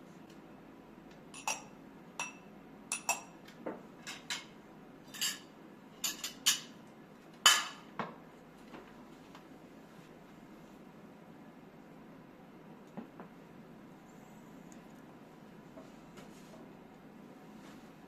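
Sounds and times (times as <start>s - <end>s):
dishes and utensils clinking: 1.3s - 3.4s, 4.0s - 6.8s, 7.4s - 7.9s.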